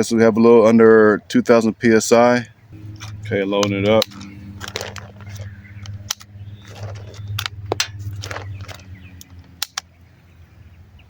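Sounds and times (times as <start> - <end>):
steady low hum: 2.6 - 10.9
rounds clicking and rattling: 2.8 - 10.0.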